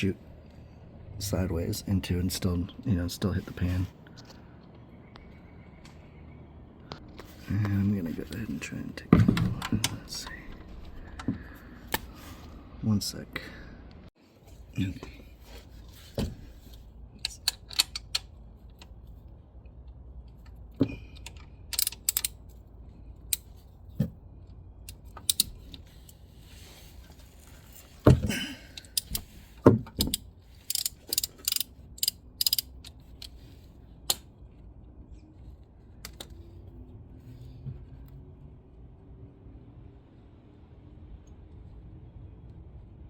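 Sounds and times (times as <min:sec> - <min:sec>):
ratchet wrench clicking: 0:21.2 - 0:22.4, 0:24.9 - 0:25.6, 0:30.0 - 0:33.4.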